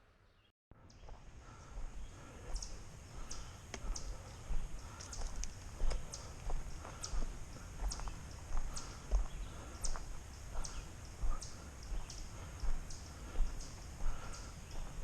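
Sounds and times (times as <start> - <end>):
footsteps on rock: 4.9 - 10.0.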